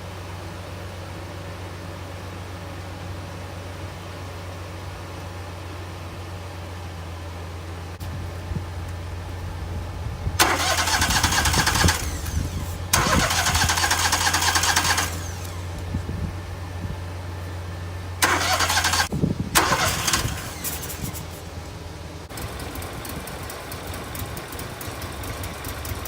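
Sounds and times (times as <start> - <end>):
steady low hum: 4.8 - 26.0
engine starter cranking: 10.3 - 16.1, 18.2 - 21.6.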